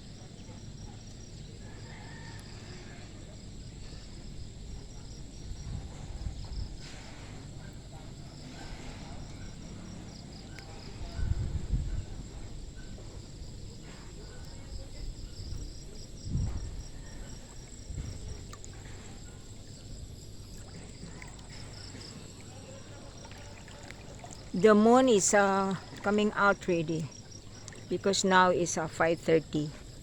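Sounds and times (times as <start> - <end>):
insects chirping in a pulsing trill: 0.0 - 30.0
low rumbles on the microphone: 2.6 - 24.7.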